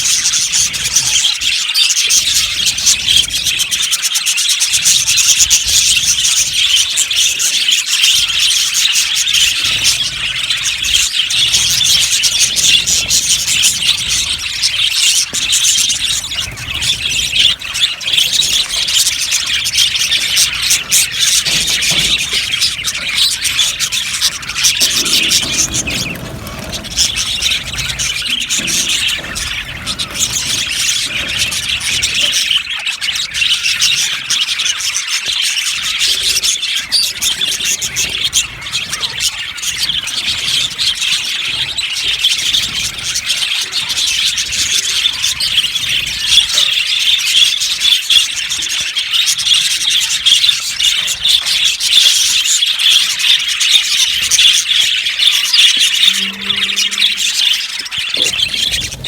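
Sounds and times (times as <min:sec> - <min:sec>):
budgerigars chirping: 0:00.0 - 0:59.0.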